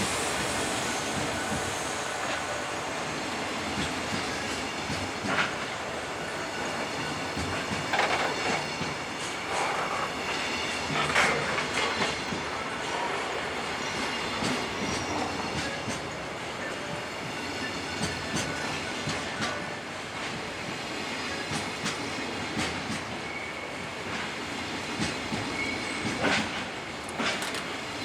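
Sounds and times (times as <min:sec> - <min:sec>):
train rumble: 0:00.0 - 0:28.0
train wheels clacking over rails: 0:00.0 - 0:28.0
high wheel squeal: 0:09.4 - 0:15.9.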